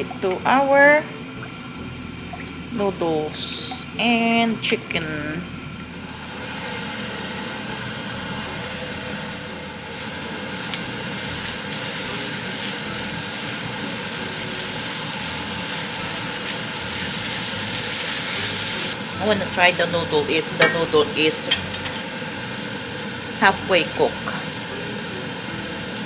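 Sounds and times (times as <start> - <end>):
food sizzling in a pan: 5.9 - 26.0.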